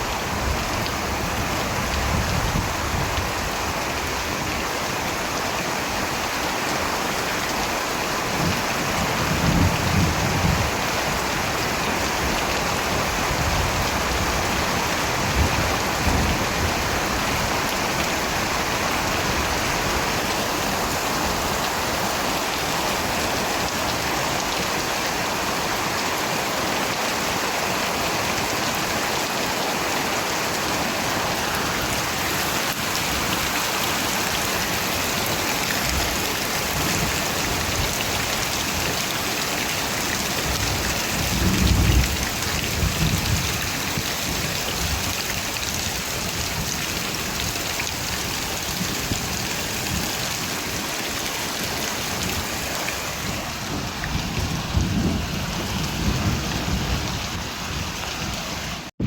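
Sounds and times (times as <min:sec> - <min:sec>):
steady rain falling: 0:00.0 - 0:59.0
thunder rumbling: 0:40.4 - 0:45.1, 0:53.1 - 0:58.0.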